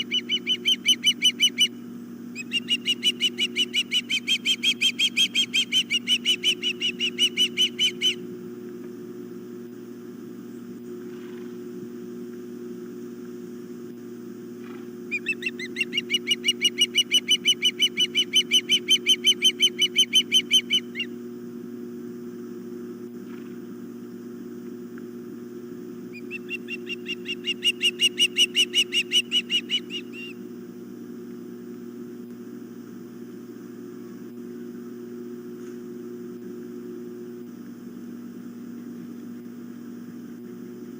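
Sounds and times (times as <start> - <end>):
osprey chirping calls: 0.0 - 8.2, 15.1 - 21.1, 26.1 - 30.4
low electrical hum: 0.0 - 40.9.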